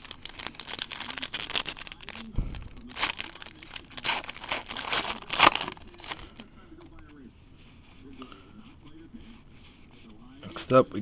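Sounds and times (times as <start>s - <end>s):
wrapper crinkling and tearing: 0.0s - 6.4s.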